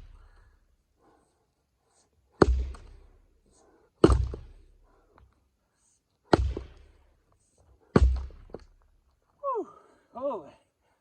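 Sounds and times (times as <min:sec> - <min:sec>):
axe chopping wood: 0:02.4 - 0:03.1, 0:04.0 - 0:04.7, 0:06.3 - 0:07.0, 0:07.9 - 0:08.8.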